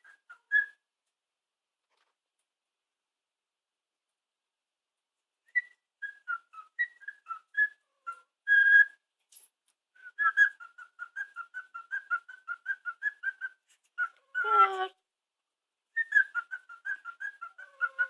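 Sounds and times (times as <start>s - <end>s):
bird whistling a tune: 0.0s - 0.8s, 5.5s - 9.0s, 10.0s - 14.2s, 15.9s - 18.0s.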